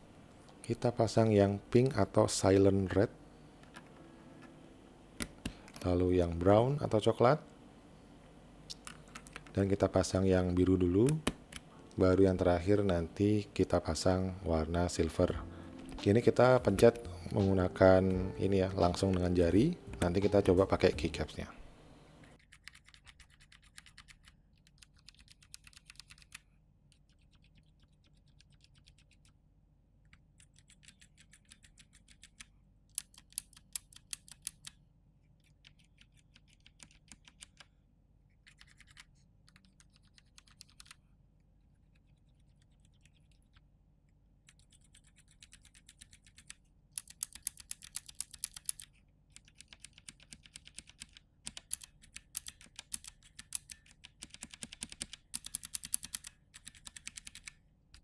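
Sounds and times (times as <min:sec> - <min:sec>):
mechanical keyboard switches clicking: 0:44.5 - 0:57.6.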